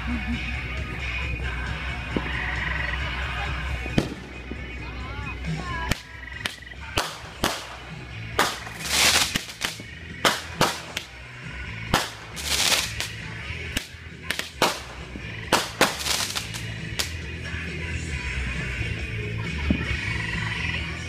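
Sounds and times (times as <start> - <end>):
fireworks bangs: 3.8 - 5.0, 5.8 - 11.0, 11.9 - 13.2, 14.3 - 17.1
fireworks hissing bursts: 5.6 - 11.0, 12.0 - 13.3, 14.3 - 17.2.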